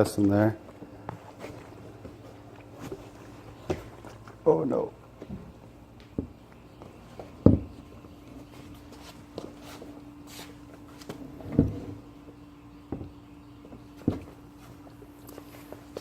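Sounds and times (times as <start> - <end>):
faint steady hum: 0.0 - 16.0
footsteps thumping: 2.8 - 4.3.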